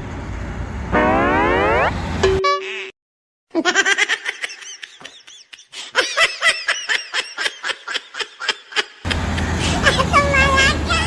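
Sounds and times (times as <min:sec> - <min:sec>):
high-pitched rapid laughter: 0:03.5 - 0:11.0.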